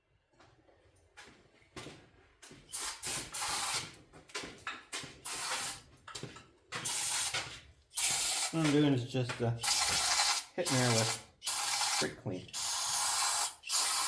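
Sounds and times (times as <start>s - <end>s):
aerosol spray bursts: 2.7s - 3.8s, 5.3s - 5.8s, 6.8s - 7.4s, 8.0s - 8.8s, 9.6s - 14.0s.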